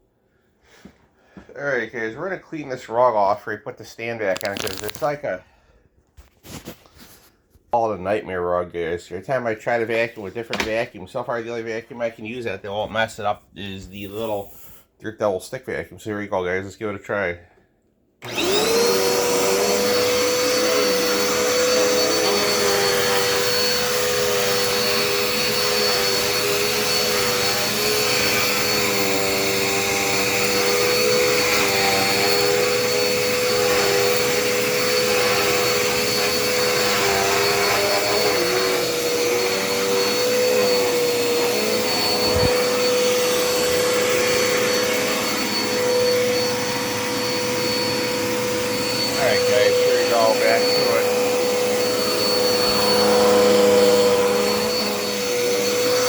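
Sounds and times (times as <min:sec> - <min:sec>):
stick vacuum running: 0:18.2 - 0:56.0.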